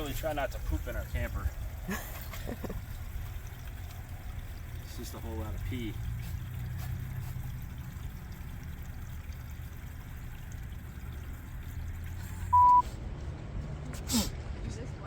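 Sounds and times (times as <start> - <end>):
liquid rushing through hose: 0.0 - 13.0
electronic beep: 12.5 - 12.8.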